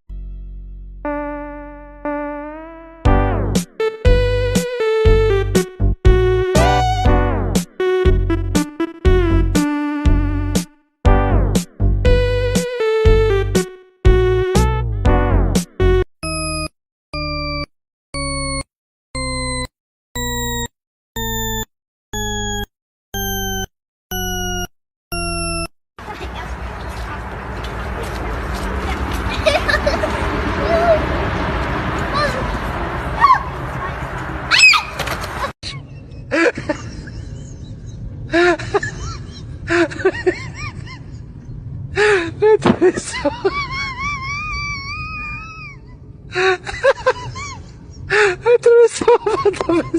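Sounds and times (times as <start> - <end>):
electronic beeps: 16.2 - 25.7
animal high-pitched calls: 34.5 - 35.0.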